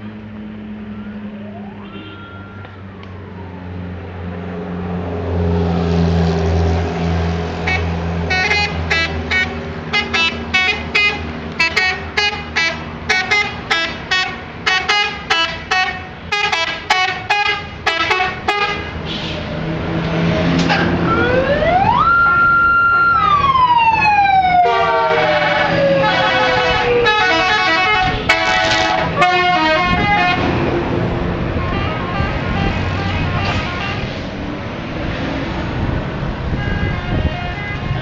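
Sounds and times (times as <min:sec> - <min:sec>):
bus horn short toots: 0:01.8 - 0:02.7, 0:07.7 - 0:19.5, 0:24.6 - 0:30.5, 0:31.6 - 0:34.1, 0:36.5 - 0:38.0
bus engine running: 0:02.6 - 0:37.4.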